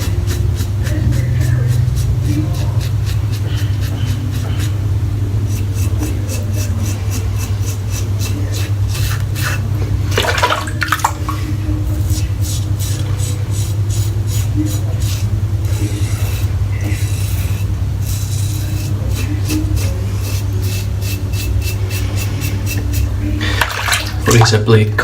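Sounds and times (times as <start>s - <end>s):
razor scraping stubble: 0.0s - 10.4s, 11.9s - 24.4s
steady low hum: 0.0s - 25.0s
running water: 10.0s - 11.6s, 23.4s - 25.0s.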